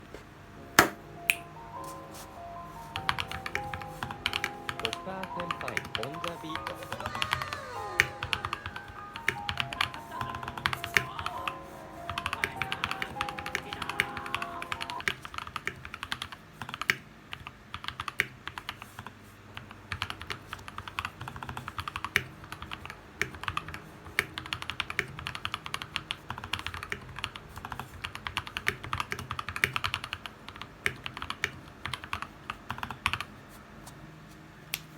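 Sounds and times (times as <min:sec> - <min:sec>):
music: 0:00.4 - 0:15.0
typing on mechanical keyboard: 0:03.0 - 0:33.3.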